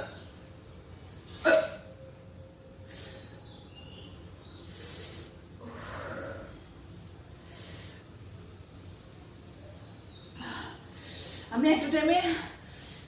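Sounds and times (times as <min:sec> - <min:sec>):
woman breathing heavily: 0:04.6 - 0:08.2, 0:10.1 - 0:11.6, 0:12.4 - 0:13.0.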